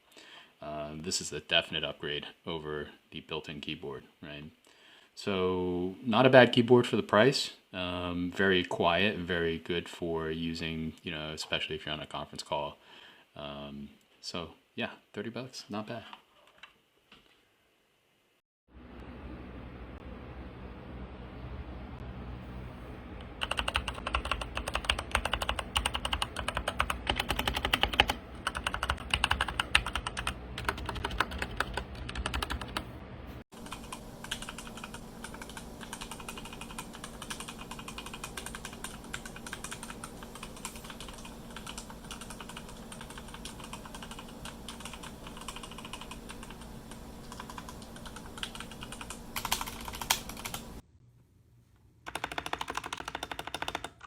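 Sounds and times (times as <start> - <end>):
typing on mechanical keyboard: 23.4 - 32.8, 33.6 - 46.6, 47.2 - 50.6, 52.1 - 54.0.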